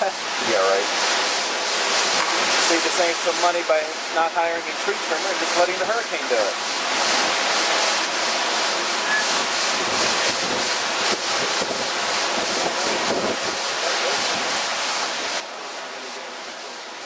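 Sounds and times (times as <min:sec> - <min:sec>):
rain: 0:00.0 - 0:17.0
wind buffeting microphone: 0:06.8 - 0:15.4.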